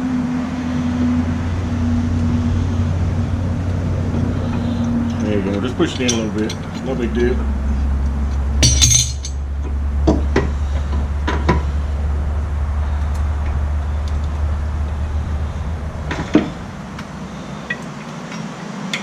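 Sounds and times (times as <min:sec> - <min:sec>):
steady low hum: 0:00.0 - 0:19.0
metallic clicks and knocks: 0:04.5 - 0:07.3.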